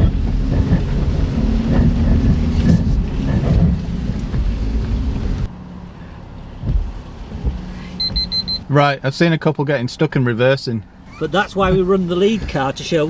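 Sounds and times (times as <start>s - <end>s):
wind rumble on microphone: 0.0s - 5.5s
car engine under load: 0.0s - 13.0s.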